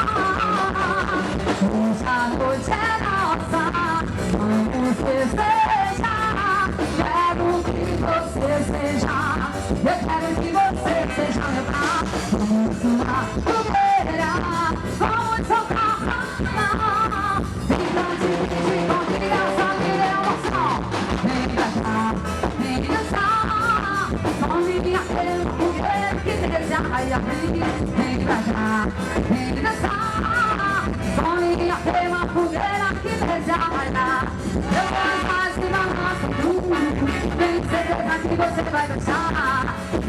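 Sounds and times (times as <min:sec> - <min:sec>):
upbeat folk dance music: 0:00.0 - 0:40.0.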